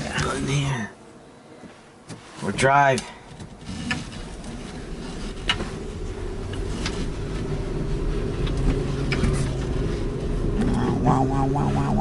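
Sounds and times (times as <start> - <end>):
electric drive and road hum: 0.0 - 12.0.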